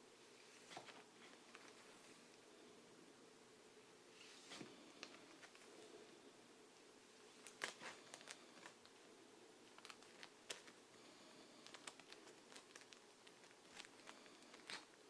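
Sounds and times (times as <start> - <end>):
comic books rustling: 0.3 - 2.4, 4.2 - 5.9, 7.3 - 15.0.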